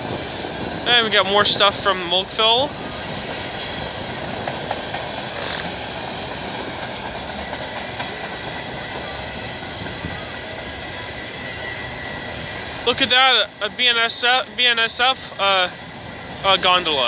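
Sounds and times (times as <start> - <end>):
train wheels rumbling on rail: 0.0 - 17.0
faint clicks: 5.3 - 6.1.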